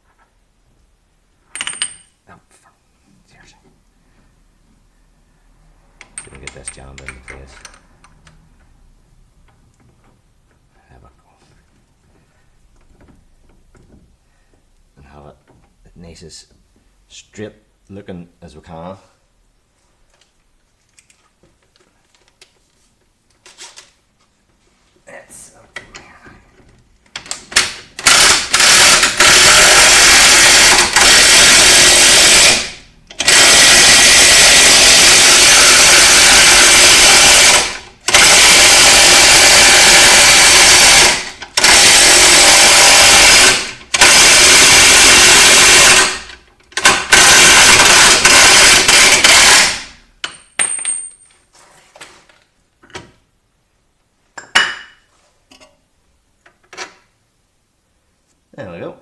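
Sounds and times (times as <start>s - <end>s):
impact wrench hammering: 1.5s - 2.1s, 27.2s - 51.2s.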